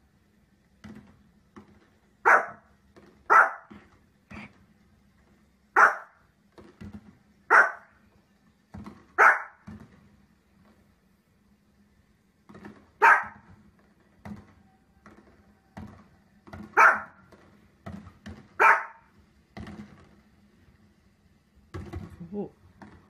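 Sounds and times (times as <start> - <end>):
dog barking: 2.2 - 2.7, 3.3 - 3.8, 5.8 - 6.2, 7.5 - 7.9, 9.2 - 9.6, 13.0 - 13.5, 16.8 - 17.2, 18.6 - 19.1.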